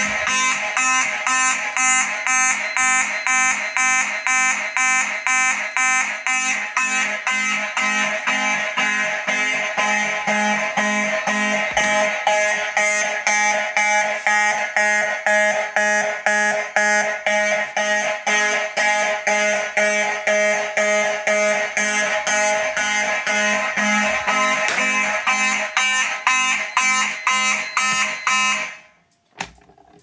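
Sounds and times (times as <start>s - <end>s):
fire alarm horns pulsing: 0.0s - 29.0s.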